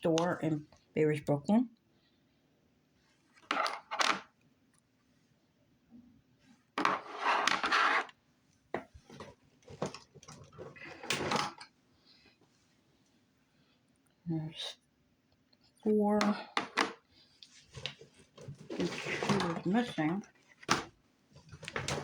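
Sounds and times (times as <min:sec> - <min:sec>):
plastic containers clacking: 0:17.8 - 0:22.0.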